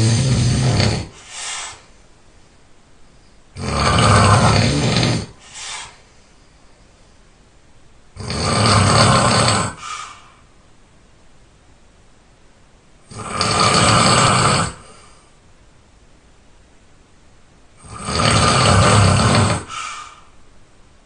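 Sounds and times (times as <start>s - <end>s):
person snoring loudly: 0.0s - 1.4s, 3.6s - 5.9s, 8.2s - 10.2s, 13.1s - 15.1s, 17.8s - 20.2s
short quiet breath: 1.2s - 2.0s, 5.4s - 6.8s, 9.8s - 10.5s, 19.7s - 20.4s.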